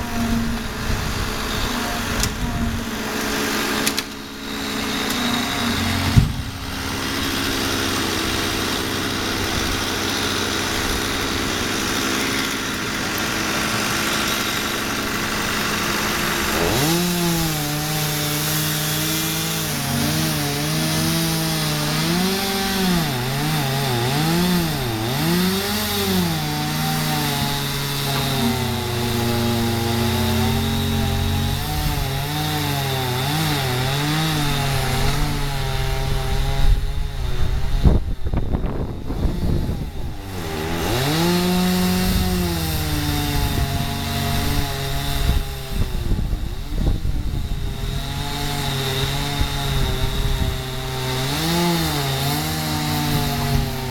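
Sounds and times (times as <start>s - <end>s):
chainsaw cutting wood: 0.0s - 53.9s
sharp knock: 6.1s - 6.8s.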